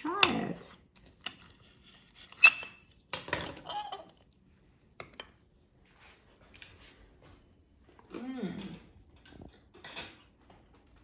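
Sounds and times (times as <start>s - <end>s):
cutlery clinking on a plate: 1.1s - 4.2s, 8.7s - 10.4s.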